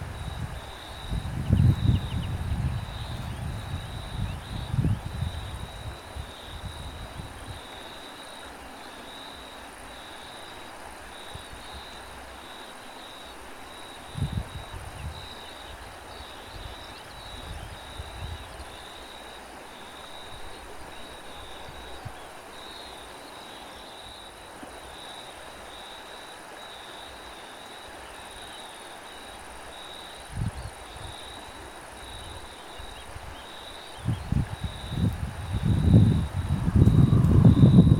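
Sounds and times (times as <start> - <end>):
wind buffeting the microphone: 0.0 - 7.7, 14.0 - 18.8, 30.3 - 37.9
crickets chirping: 0.0 - 37.9.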